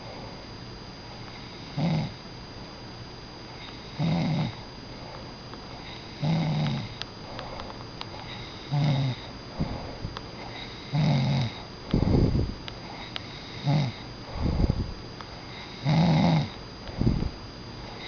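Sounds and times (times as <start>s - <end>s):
pet snoring: 1.3s - 2.2s, 3.6s - 4.6s, 5.8s - 7.0s, 8.2s - 14.8s, 15.5s - 17.3s.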